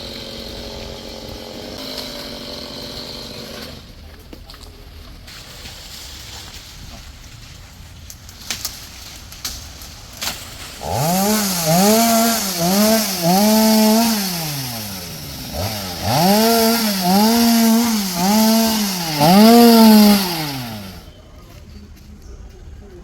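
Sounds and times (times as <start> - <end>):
chainsaw revving: 0.0 - 3.9, 10.8 - 21.1.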